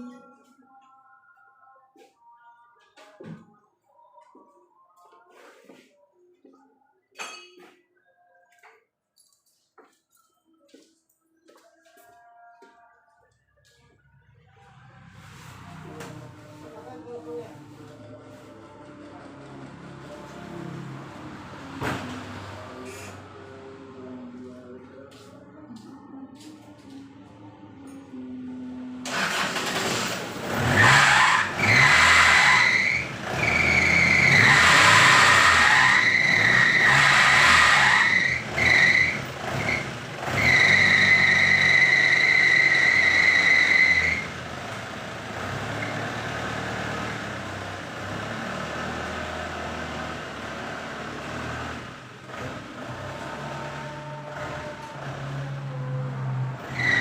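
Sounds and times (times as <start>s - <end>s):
car engine: 14.4s - 57.0s
car squealing: 29.1s - 57.0s.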